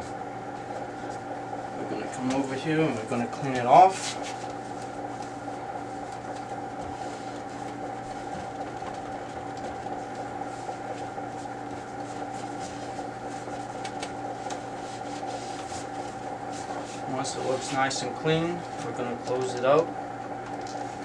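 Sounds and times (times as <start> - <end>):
steady machine hum: 0.0 - 21.0
rag wiping glass: 14.8 - 17.9.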